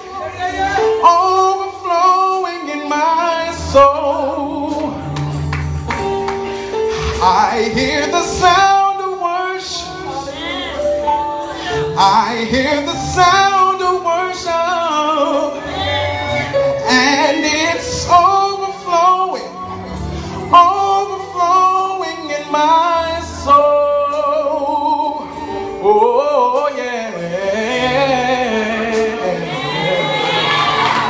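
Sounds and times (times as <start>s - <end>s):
bass line: 0.0s - 31.0s
gospel choir singing: 6.6s - 25.2s, 25.9s - 31.0s.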